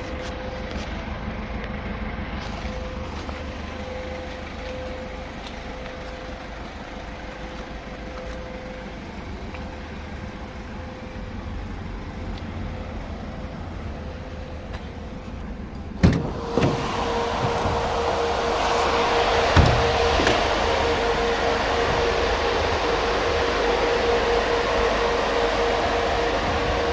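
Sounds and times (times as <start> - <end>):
diesel engine idling: 0.0 - 26.9
door thumping shut: 16.0 - 18.4, 19.4 - 20.6
loud steady rushing noise: 16.0 - 26.9.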